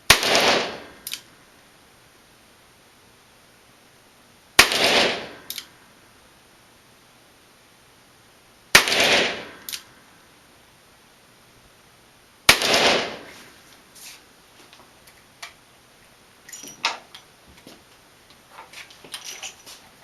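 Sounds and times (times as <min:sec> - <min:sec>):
handgun shots: 0:08.8 - 0:09.8, 0:12.5 - 0:13.3.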